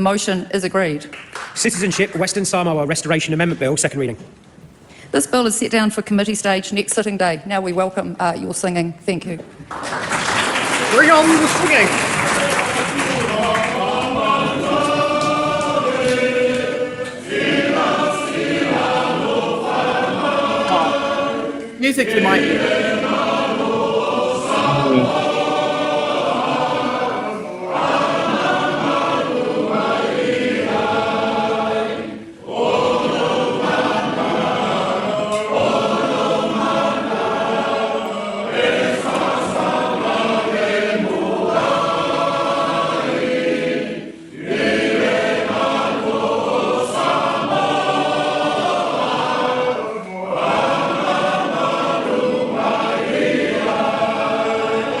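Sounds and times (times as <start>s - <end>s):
choir singing: 12.2s - 55.0s.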